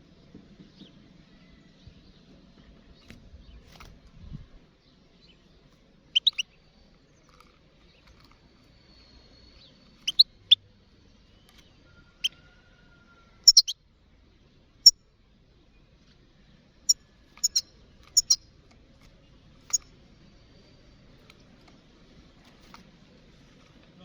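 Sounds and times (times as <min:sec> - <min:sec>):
goldfinch chirping calls: 0:06.1 - 0:06.4, 0:10.0 - 0:10.3, 0:13.5 - 0:13.8, 0:17.4 - 0:18.4.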